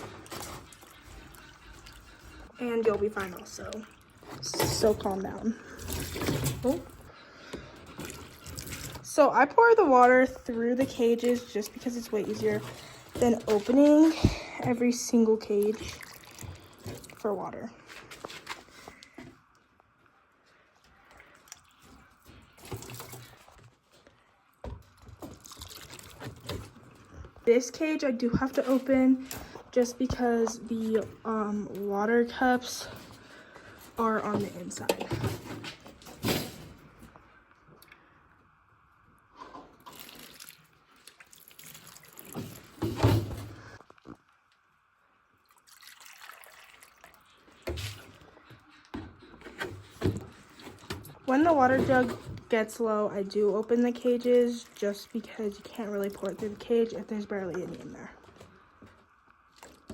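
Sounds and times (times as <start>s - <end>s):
water pouring and splashing: 0.0s - 7.0s, 7.8s - 9.3s, 10.9s - 18.7s, 21.0s - 23.9s, 25.0s - 27.1s, 39.7s - 43.5s, 45.4s - 48.4s, 53.6s - 57.0s
water trickling and dripping: 15.3s - 17.6s, 39.8s - 42.8s, 45.4s - 48.3s, 53.6s - 56.9s.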